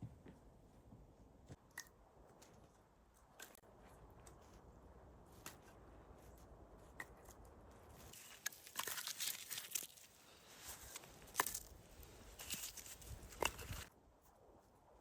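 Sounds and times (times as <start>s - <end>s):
crunching and rustling: 2.3s - 13.9s.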